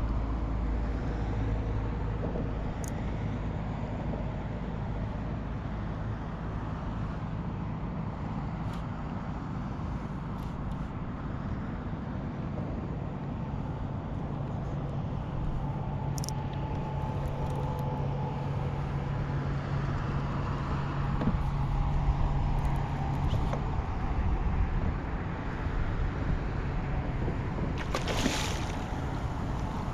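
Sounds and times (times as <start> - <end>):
low motor hum: 0.0 - 29.9
wind rumble: 13.3 - 29.9
water noise: 27.3 - 29.9.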